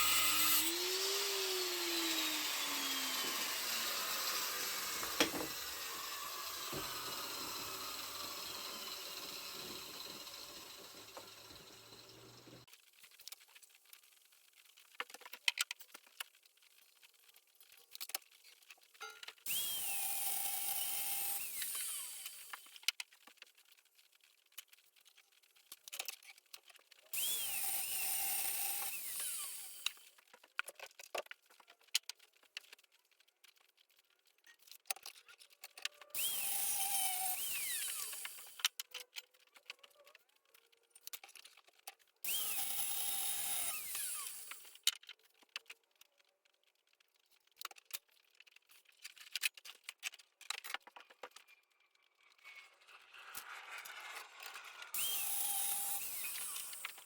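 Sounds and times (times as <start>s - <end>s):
power tool cutting steel rod: 0.0s - 12.7s, 19.5s - 22.8s, 27.2s - 30.1s, 36.1s - 38.7s, 42.3s - 44.8s, 52.3s - 57.0s.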